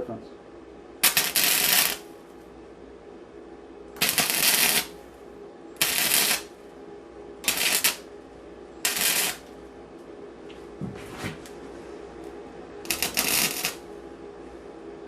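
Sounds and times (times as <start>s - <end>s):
welding arc crackling: 1.0s - 2.1s, 4.0s - 5.0s, 5.8s - 6.5s, 7.4s - 8.0s, 8.8s - 9.5s, 12.8s - 13.8s.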